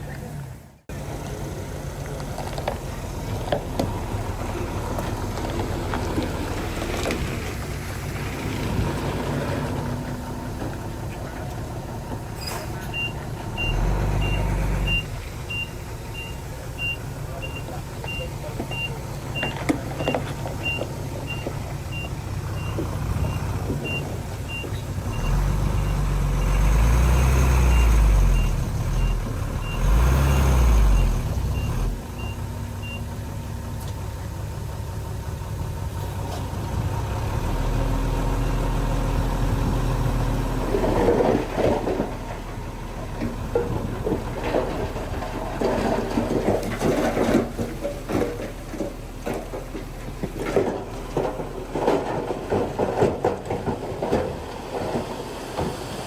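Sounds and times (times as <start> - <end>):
diesel engines running: 0.0 - 56.0
reversing alarm beeps: 12.9 - 26.6.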